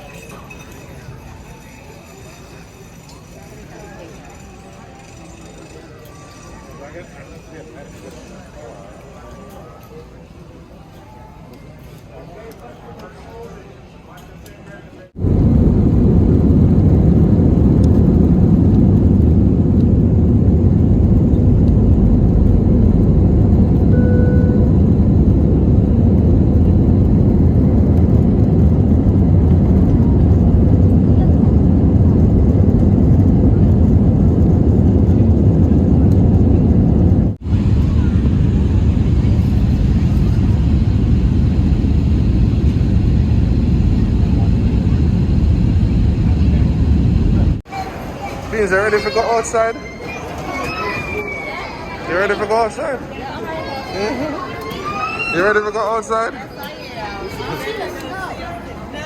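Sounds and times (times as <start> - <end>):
vehicle cabin rumble: 15.2 - 47.6
faint brief tone: 23.8 - 25.0.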